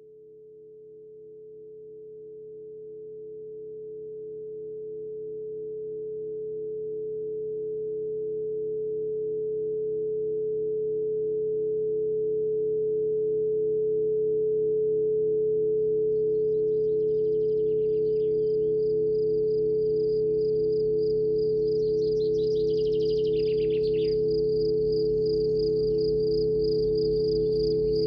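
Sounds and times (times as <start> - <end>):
soft pulsing tone: 13.1 - 28.0
electronic drone tone: 18.0 - 28.0
high chirping: 21.9 - 28.0.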